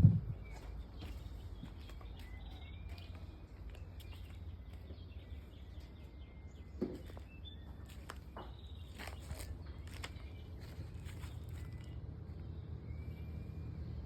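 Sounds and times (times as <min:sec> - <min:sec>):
low rumble: 0:00.0 - 0:00.6.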